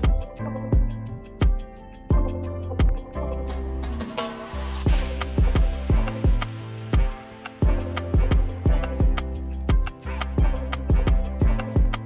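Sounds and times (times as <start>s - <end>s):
bass drum beat: 0.0s - 4.0s, 4.8s - 12.0s
held bass notes: 0.0s - 12.0s.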